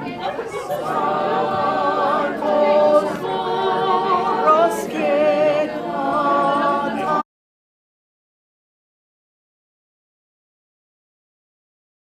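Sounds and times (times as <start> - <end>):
group singing a cappella: 0.0 - 7.2.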